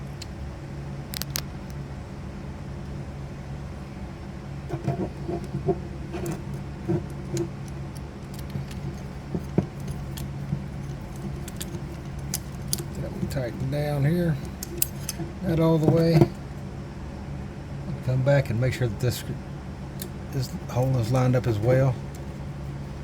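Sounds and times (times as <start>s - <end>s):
steady low hum: 0.0s - 23.0s
small metal parts clinking: 6.2s - 16.4s.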